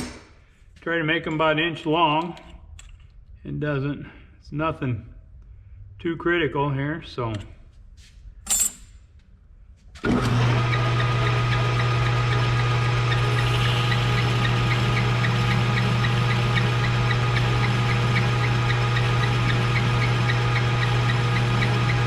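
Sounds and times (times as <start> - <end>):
metal lathe running: 10.0 - 22.0.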